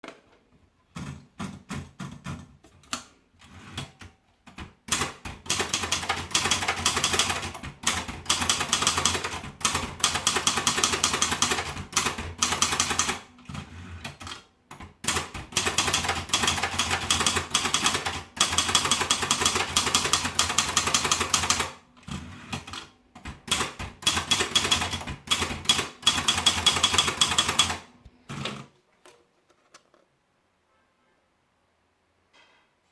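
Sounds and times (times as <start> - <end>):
typewriter key strikes: 23.4 - 27.8.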